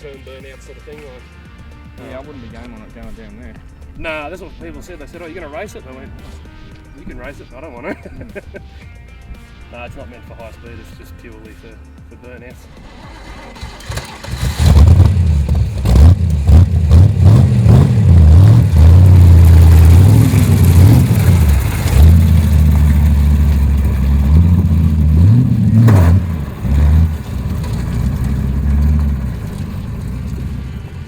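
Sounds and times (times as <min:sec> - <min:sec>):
engine revving hard: 0:12.7 - 0:30.7
sharp engine crack: 0:12.7 - 0:31.0.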